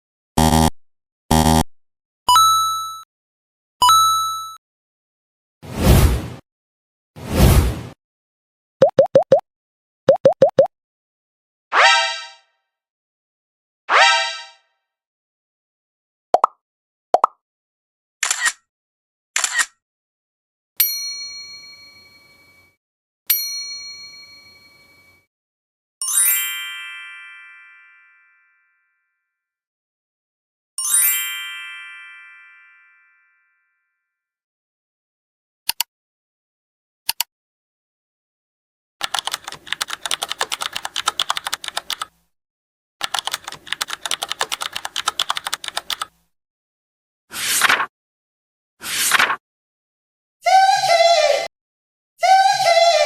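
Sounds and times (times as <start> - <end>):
bell-like ding: 3.8 - 4.6, 20.8 - 25.2
keyboard typing: 39.0 - 42.1, 43.0 - 46.1.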